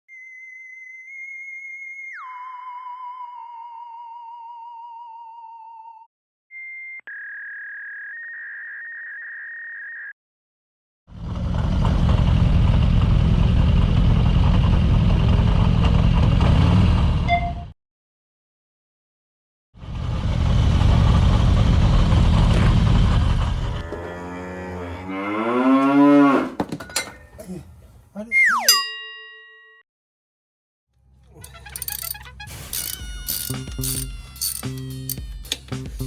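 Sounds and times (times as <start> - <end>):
motorcycle engine running loudly: 11.1 - 16.2.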